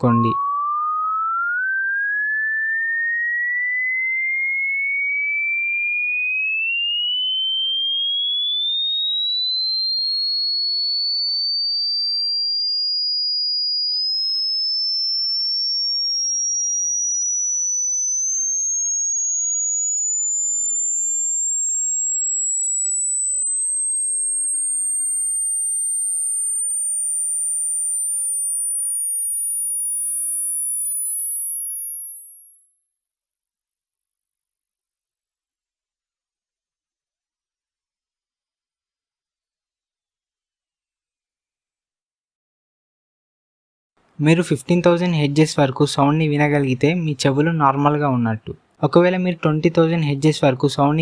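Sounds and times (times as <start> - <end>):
rising electronic sine tone: 0.0 - 41.8.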